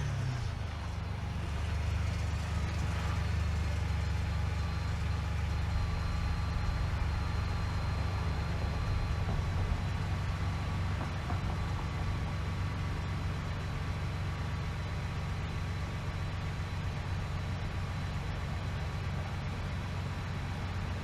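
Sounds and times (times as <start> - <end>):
vehicle engine idling: 0.0 - 21.0.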